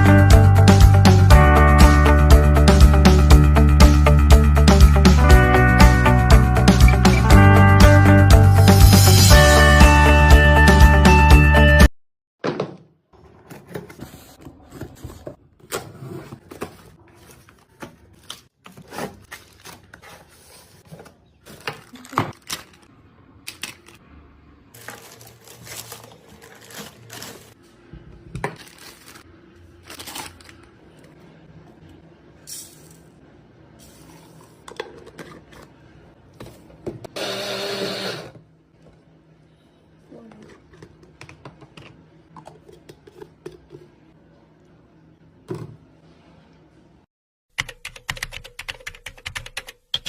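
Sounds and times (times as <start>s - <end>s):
music: 0.0s - 11.9s.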